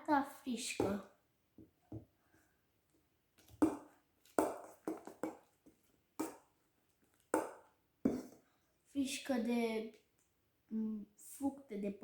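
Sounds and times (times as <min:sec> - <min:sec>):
utensil stirring foamy slime: 0:03.5 - 0:06.5.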